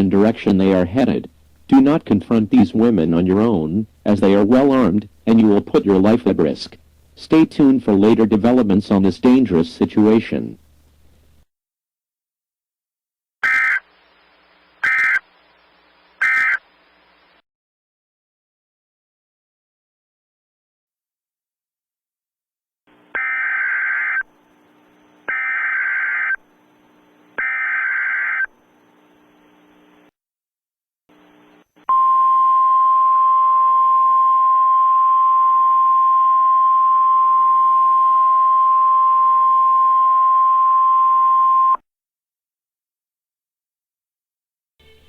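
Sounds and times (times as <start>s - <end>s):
rasping data bursts: 13.4s - 15.5s, 16.1s - 16.6s, 23.1s - 24.3s, 25.1s - 26.4s, 27.3s - 29.9s
low hiss: 13.8s - 17.4s.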